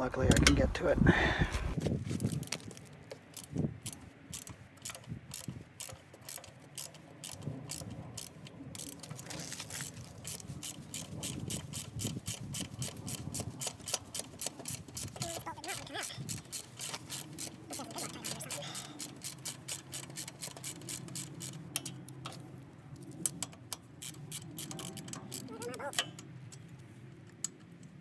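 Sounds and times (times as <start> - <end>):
ratchet wrench clicking: 3.4 - 22.4, 23.1 - 26.3.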